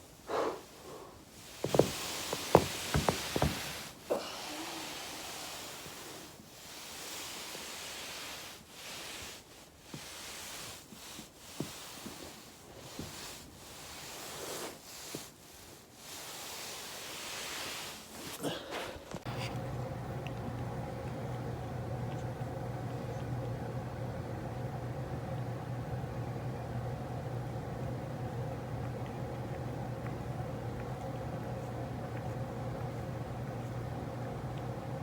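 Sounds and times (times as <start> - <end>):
clothing rubbing on foam roller: 1.3 - 4.1, 4.7 - 19.7.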